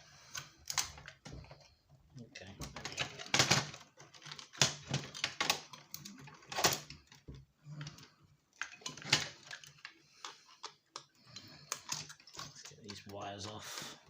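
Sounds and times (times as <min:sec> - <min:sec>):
rustling and scraping: 0:00.0 - 0:14.0.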